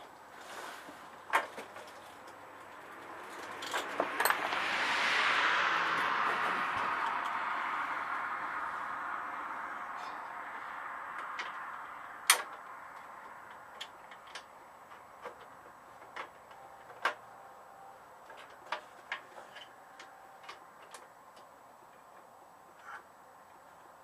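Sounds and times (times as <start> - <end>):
hand tools clicking and tapping: 11.2 - 17.4.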